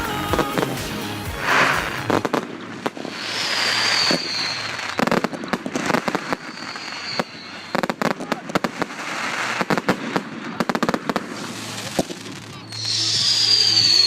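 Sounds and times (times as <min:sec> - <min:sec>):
music playing: 0:00.0 - 0:02.4
firework burst: 0:00.0 - 0:14.0
firework crackles: 0:00.0 - 0:14.0
firework whistle: 0:01.4 - 0:08.2, 0:11.4 - 0:14.0.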